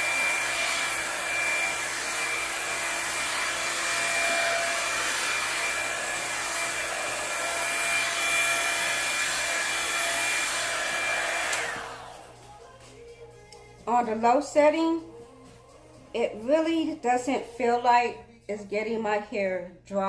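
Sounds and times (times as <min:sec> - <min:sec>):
hair dryer brush blowing with whine: 0:00.0 - 0:12.7.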